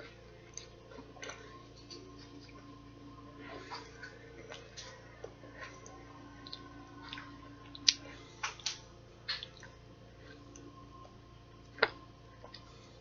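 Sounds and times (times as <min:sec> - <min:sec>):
person chewing chocolate: 0:03.5 - 0:13.0.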